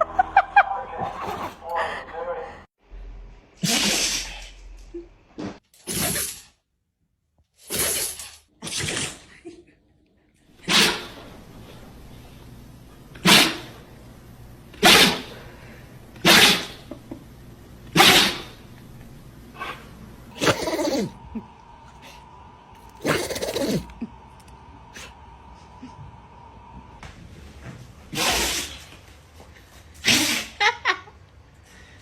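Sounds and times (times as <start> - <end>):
pet sneezing: 3.6 - 4.5, 7.7 - 9.4, 10.6 - 12.4, 13.1 - 13.8, 14.7 - 17.2, 17.9 - 18.7, 19.6 - 21.2, 22.8 - 24.1, 28.1 - 29.0, 30.0 - 30.6.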